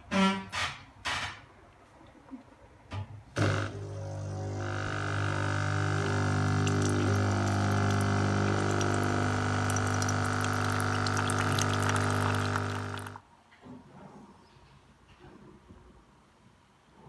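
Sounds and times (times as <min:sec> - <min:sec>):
espresso machine pump humming: 0:03.4 - 0:13.2.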